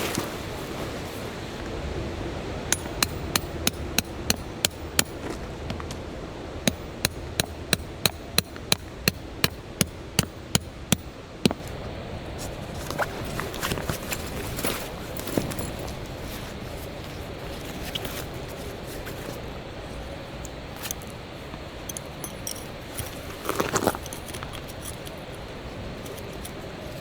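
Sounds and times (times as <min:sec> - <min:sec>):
hammer striking metal: 0:02.7 - 0:05.2, 0:06.6 - 0:11.6.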